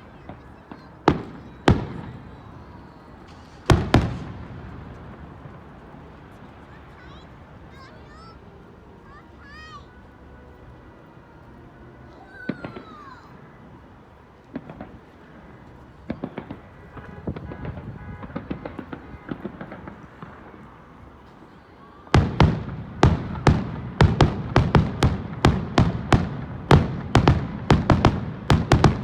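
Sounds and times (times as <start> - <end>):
fireworks popping and crackling: 0.0 - 7.9, 14.4 - 21.5, 22.1 - 29.0
fireworks bangs: 0.0 - 8.4, 14.5 - 21.4, 22.1 - 29.0.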